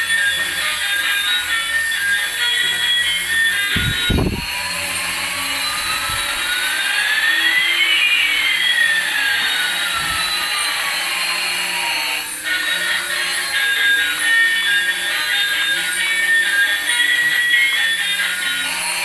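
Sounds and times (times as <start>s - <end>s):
gliding tones: 0.0s - 10.6s.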